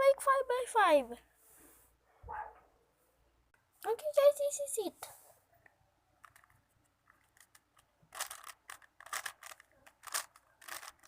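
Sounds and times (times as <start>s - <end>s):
puzzle cube layers clicking: 6.2s - 11.0s.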